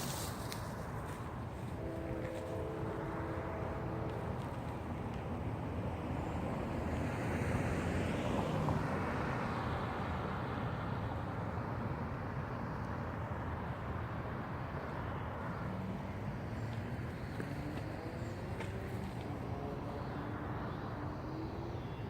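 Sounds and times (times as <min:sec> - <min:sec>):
traffic rumble: 0:00.0 - 0:22.0
vehicle passing: 0:14.2 - 0:22.0.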